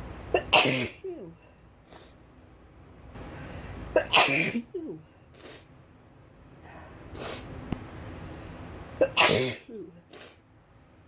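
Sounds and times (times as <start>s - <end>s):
breathing and sniffing: 3.2s - 3.9s.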